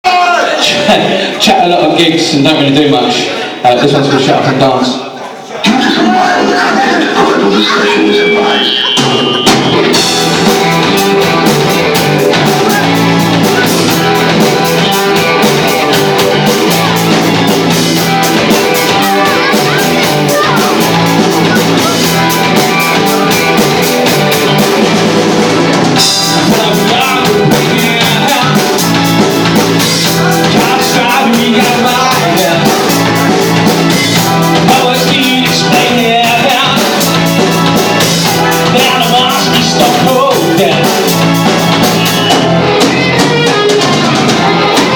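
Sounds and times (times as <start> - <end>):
drum kit beat: 5.7 - 44.9
person singing: 6.1 - 24.8, 26.0 - 44.9
electric guitar: 7.1 - 44.9.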